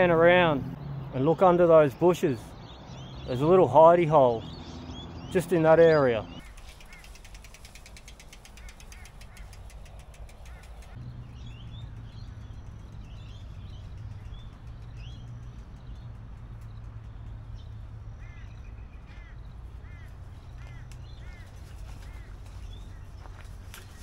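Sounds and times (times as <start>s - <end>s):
birds chirping: 0.0s - 24.0s
bird arching calls: 6.3s - 11.0s, 18.2s - 23.3s
steady low rumble: 8.3s - 23.8s.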